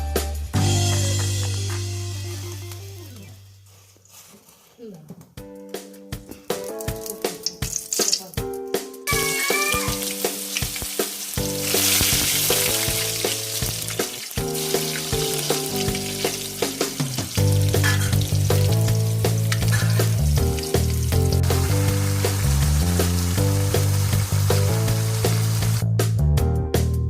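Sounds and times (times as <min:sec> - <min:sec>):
background music: 0:00.0 - 0:03.7, 0:04.8 - 0:27.0
curry sizzling in oil: 0:06.5 - 0:08.4, 0:09.1 - 0:25.8.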